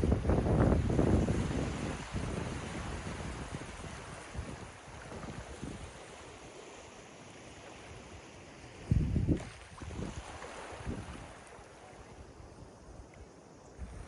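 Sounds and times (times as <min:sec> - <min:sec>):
wind buffeting microphone: 0:00.0 - 0:06.1, 0:08.8 - 0:11.4
ocean surf washing on beach: 0:00.0 - 0:14.0.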